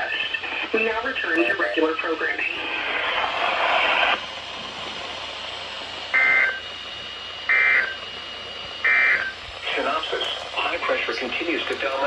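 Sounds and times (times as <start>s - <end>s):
steady radio hiss: 0.0s - 12.0s
two-tone digital warble: 1.4s - 2.5s.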